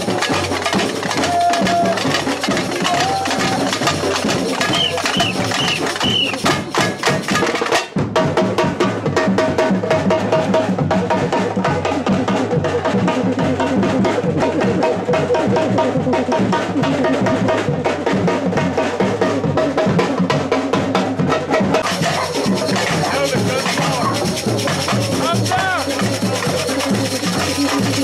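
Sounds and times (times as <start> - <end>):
samba percussion band drumming: 0.0 - 28.0.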